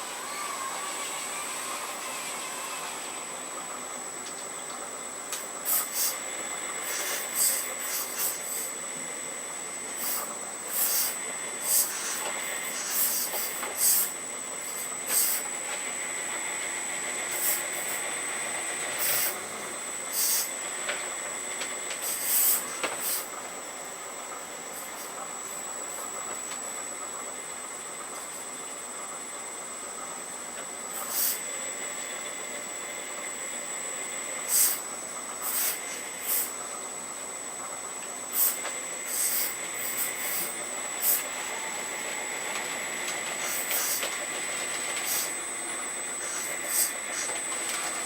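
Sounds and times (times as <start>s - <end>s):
hydraulic whine: 5.2s - 48.0s
hydraulic hiss bursts: 5.4s - 8.8s, 9.9s - 15.6s, 17.2s - 18.2s, 19.0s - 20.7s, 22.0s - 23.4s, 24.7s - 26.2s, 30.9s - 31.6s, 34.3s - 36.6s, 38.3s - 44.3s, 45.0s - 47.4s.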